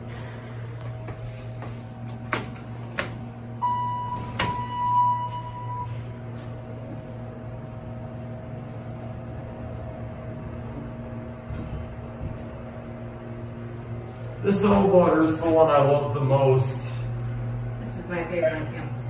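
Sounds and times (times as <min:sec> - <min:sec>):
elevator machine hum: 0:00.0 - 0:19.0
electronic beep: 0:03.6 - 0:06.0.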